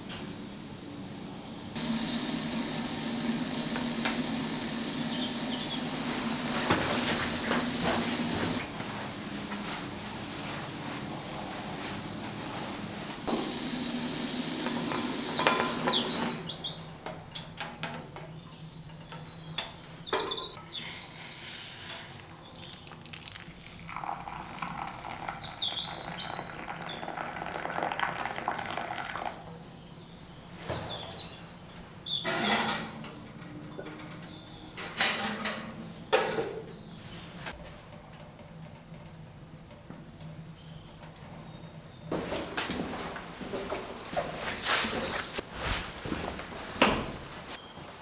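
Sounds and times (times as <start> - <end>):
small birds chirping: 1.8 - 8.6, 14.9 - 17.0, 18.2 - 27.6, 29.4 - 32.3.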